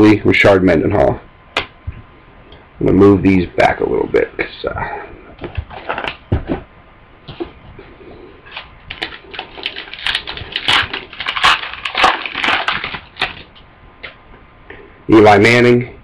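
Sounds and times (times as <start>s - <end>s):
cards being shuffled: 5.4s - 6.2s, 8.5s - 13.6s.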